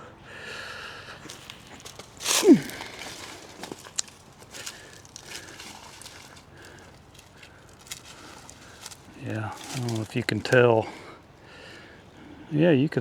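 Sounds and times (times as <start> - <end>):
footsteps on rocks and leaves: 1.1 - 11.3.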